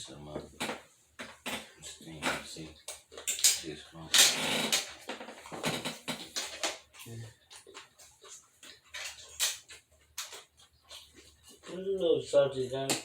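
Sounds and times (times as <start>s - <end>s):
chewing and lip-smacking: 6.4s - 11.9s.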